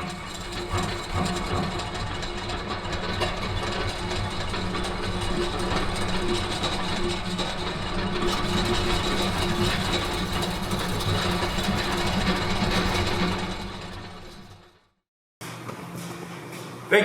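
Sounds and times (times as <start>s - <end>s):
machine running: 0.0s - 14.8s.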